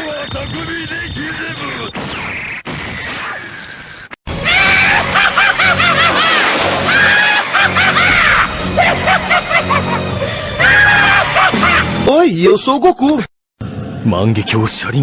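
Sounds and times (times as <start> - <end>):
music: 4.3 - 12.3.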